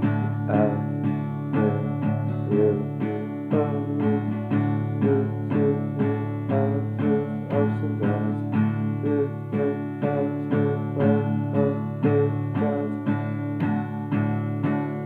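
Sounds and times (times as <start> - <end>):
acoustic guitar chords: 0.0 - 15.0.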